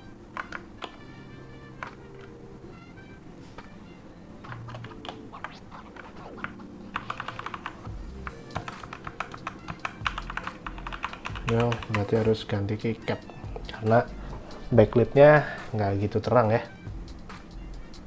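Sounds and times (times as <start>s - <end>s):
background music: 0.0s - 18.0s
mechanical keyboard keys clicking: 0.4s - 1.0s, 6.0s - 7.8s, 8.6s - 12.4s.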